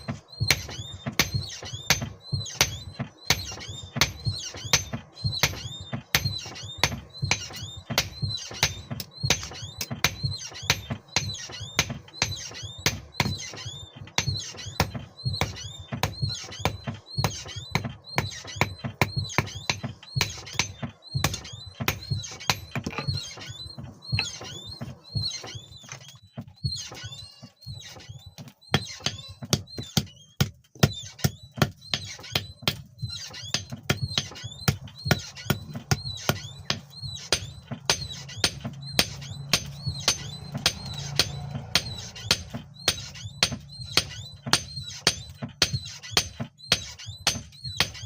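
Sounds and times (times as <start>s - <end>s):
metalworking clicks and scrapes: 16.0s - 48.0s.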